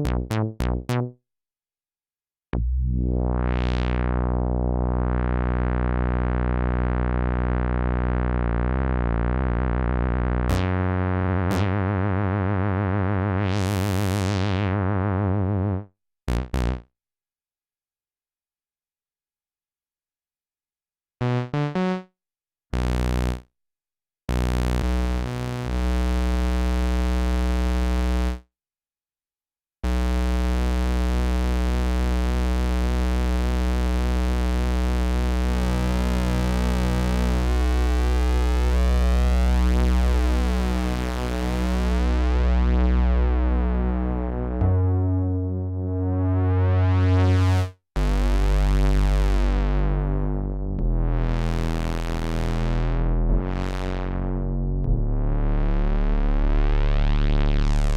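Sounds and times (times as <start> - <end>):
deep synth bass: 0.0 - 1.2, 2.6 - 16.9, 21.2 - 22.0, 22.8 - 23.4, 24.3 - 28.2, 30.0 - 57.9
synthesizer notes and chords: 0.0 - 1.2, 2.6 - 16.8, 21.2 - 22.1, 30.8 - 57.9.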